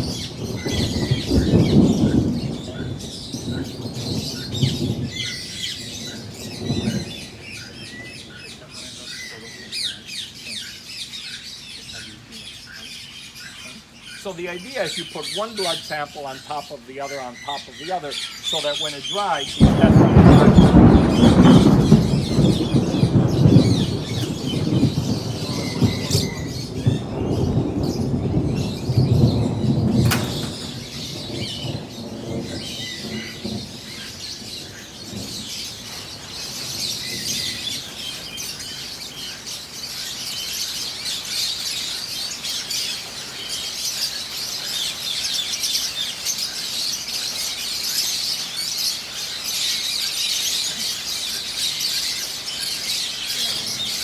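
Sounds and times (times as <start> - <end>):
birds chattering and chirping: 0.0 - 54.0
low rumbling noise: 13.8 - 38.4
sharp knock: 30.0 - 30.8.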